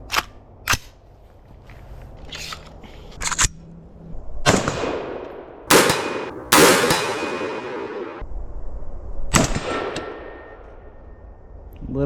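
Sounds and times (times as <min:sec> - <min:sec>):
rifle shots: 0:05.7 - 0:08.2.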